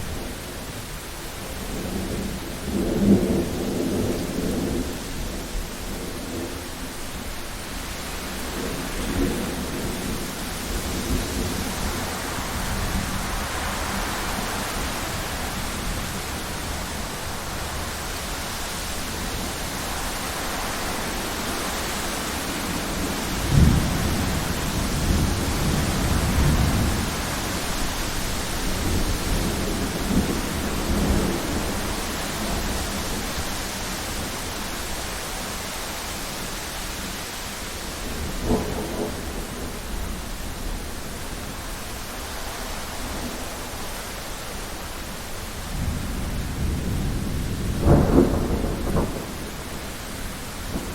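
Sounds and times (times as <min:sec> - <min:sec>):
heavy rain: 0:00.0 - 0:50.9
wind: 0:00.0 - 0:50.9
thunder clap and rumbles: 0:22.4 - 0:34.3, 0:37.9 - 0:40.9, 0:45.7 - 0:50.9.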